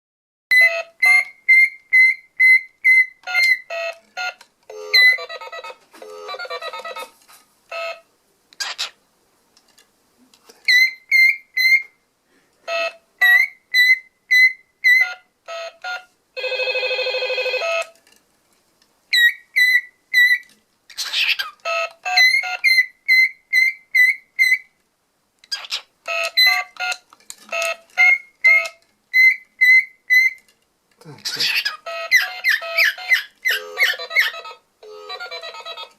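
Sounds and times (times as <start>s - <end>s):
cockatiel chirping: 0.5s - 3.9s, 4.9s - 7.1s, 8.6s - 9.0s, 10.7s - 12.0s, 12.7s - 16.0s, 19.1s - 24.7s, 25.5s - 30.4s, 31.2s - 35.9s
toy phone electronic beeps: 0.5s - 7.1s, 7.7s - 8.1s, 12.7s - 18.0s, 21.6s - 24.2s, 26.1s - 30.4s, 31.8s - 35.9s
buzzy ring tone: 3.7s - 7.1s, 15.5s - 17.9s, 33.5s - 35.6s.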